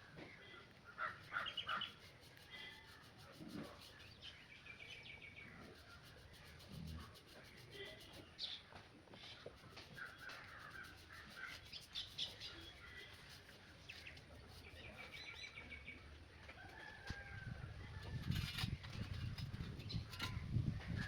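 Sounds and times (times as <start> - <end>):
faint bird chirps and trill: 1.0 - 16.0.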